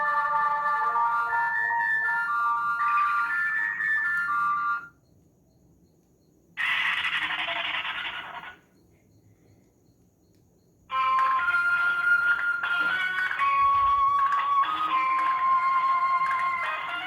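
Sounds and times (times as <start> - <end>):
electronic ringtone melody: 0.0 - 5.0, 10.9 - 17.0.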